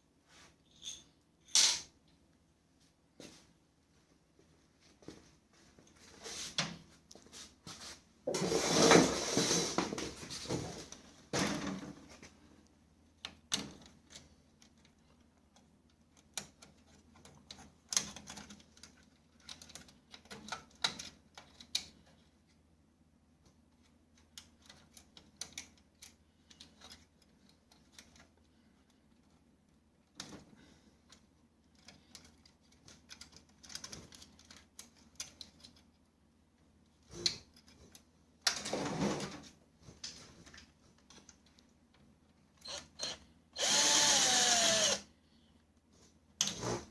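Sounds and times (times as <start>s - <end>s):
printer parts clicking and rattling: 13.3s - 22.2s, 31.7s - 36.0s.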